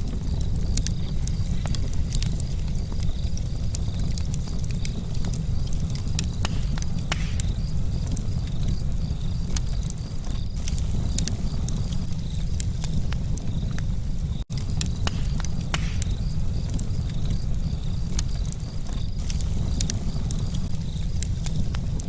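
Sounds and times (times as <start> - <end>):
campfire crackling and popping: 0.0 - 22.0
low rumble: 0.0 - 22.0.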